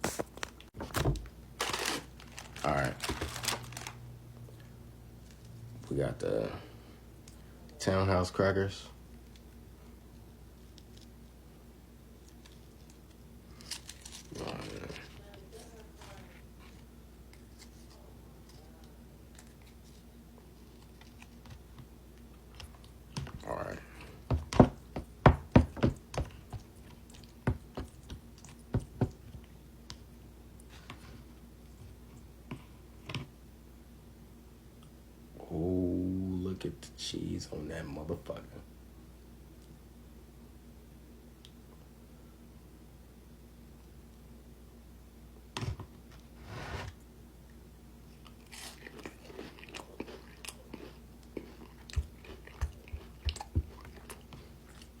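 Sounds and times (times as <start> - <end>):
eating crunches and clicks: 48.1 - 55.0.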